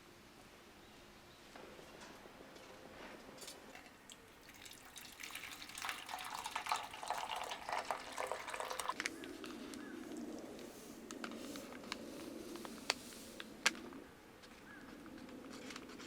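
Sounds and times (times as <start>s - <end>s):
water splashing and dripping: 4.1s - 9.0s.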